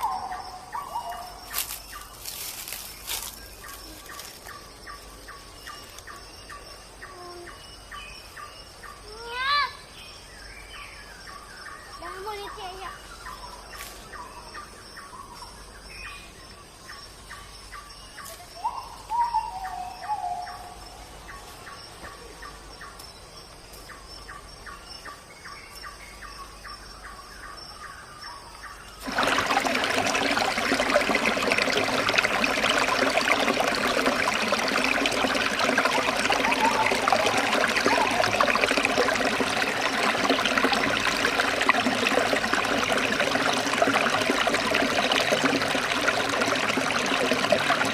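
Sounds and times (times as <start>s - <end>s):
birds calling: 29.0s - 47.9s
running water rushing: 29.0s - 47.9s.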